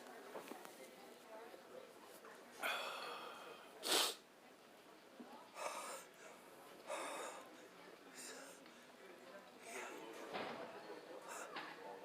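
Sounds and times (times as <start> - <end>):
person sneezing: 3.8 - 4.2.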